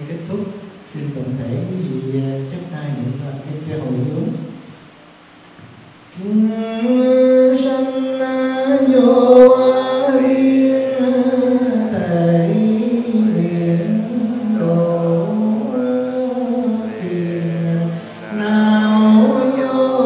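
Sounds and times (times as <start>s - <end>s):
slow chant-like singing: 6.1s - 20.0s.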